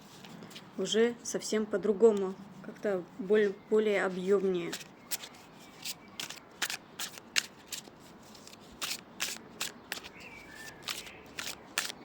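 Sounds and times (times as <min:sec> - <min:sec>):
cards being shuffled: 0:04.2 - 0:12.0.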